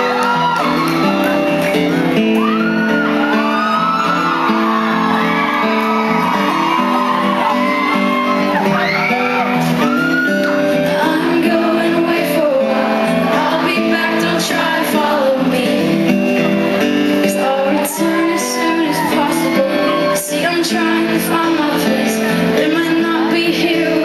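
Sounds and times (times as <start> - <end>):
strummed acoustic guitars: 0.0 - 24.0
woman singing: 10.7 - 16.3, 17.2 - 24.0.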